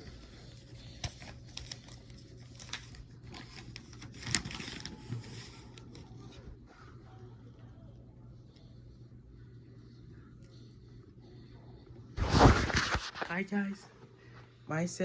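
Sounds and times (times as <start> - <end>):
faint low hum: 0.0 - 15.0
rustling: 12.2 - 13.4.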